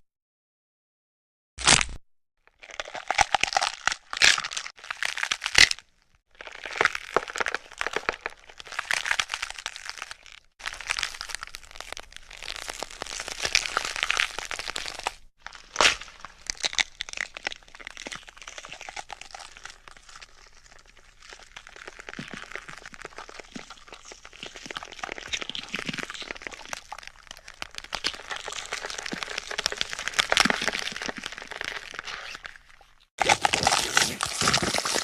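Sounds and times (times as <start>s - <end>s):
sharp crack: 1.6s - 2.0s
dense crackling and crinkling: 2.7s - 35.0s.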